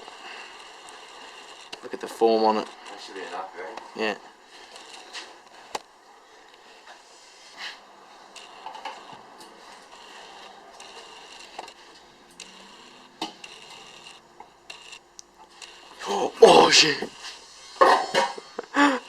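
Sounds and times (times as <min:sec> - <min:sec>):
containers clicking and knocking: 0:17.8 - 0:18.6.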